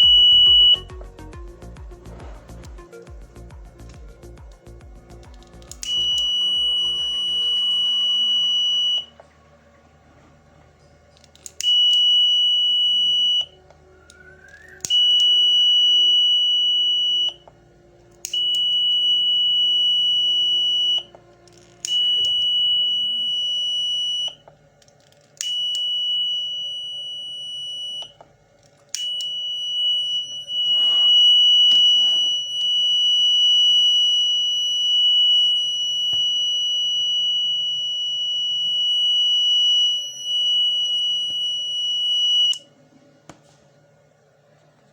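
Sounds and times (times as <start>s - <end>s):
fire alarm buzzer tone: 0.0s - 1.1s, 5.7s - 9.2s, 11.6s - 17.5s, 18.2s - 21.2s, 21.8s - 24.5s, 25.4s - 28.2s, 29.0s - 42.7s
switch click: 5.4s - 6.4s.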